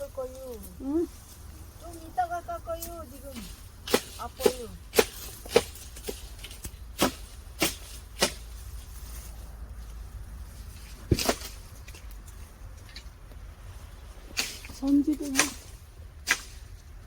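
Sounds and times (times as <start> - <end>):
sharp knocks on tree: 3.8 - 8.6, 10.8 - 12.1, 14.3 - 16.8.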